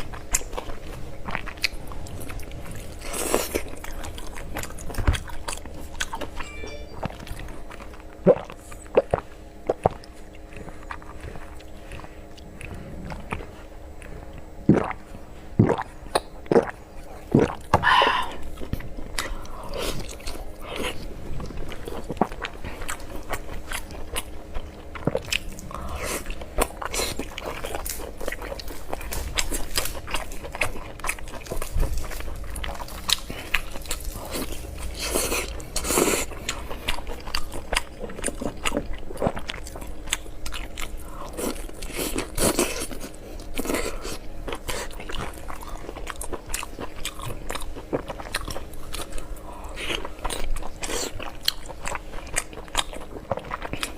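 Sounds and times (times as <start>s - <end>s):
person chewing crunchy food: 0.0s - 53.9s
wet mouth sounds: 8.2s - 18.5s.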